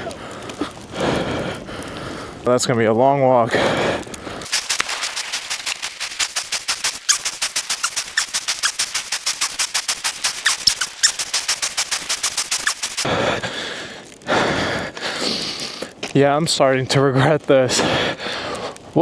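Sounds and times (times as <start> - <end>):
fast even clicking: 4.1 - 13.1
soft hiss: 4.5 - 13.1.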